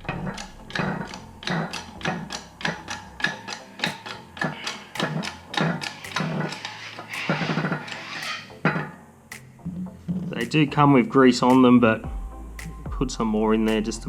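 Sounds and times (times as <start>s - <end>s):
ratchet wrench clicking: 0.0s - 8.5s.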